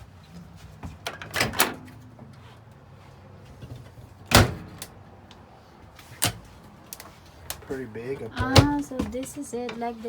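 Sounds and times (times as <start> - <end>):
door knocking shut: 8.4 - 9.2.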